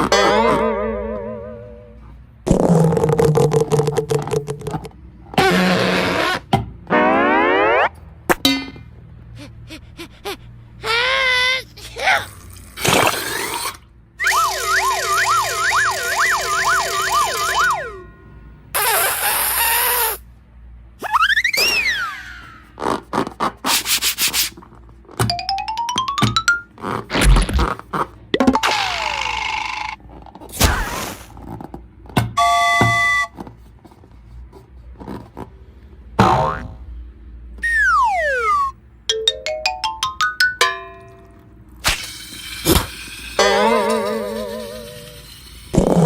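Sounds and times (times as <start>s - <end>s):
siren-like wailing tone: 6.9s - 8.0s, 14.2s - 18.2s, 37.6s - 38.7s
hiss: 23.7s - 24.6s
burst of noise: 30.6s - 31.4s.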